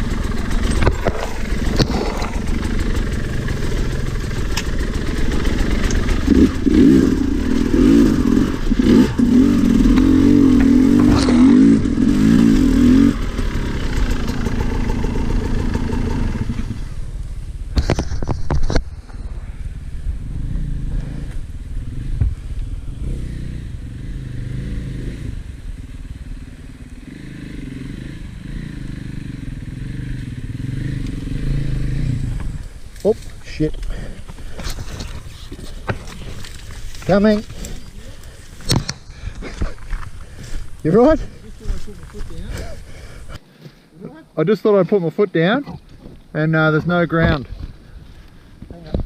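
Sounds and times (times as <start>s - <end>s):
two-stroke motorbike engine revving: 0.0s - 17.0s, 19.8s - 34.0s.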